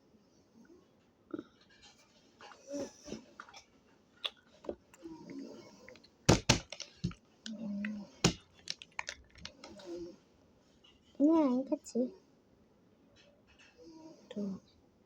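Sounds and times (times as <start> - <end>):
food package handling: 5.9 - 10.0.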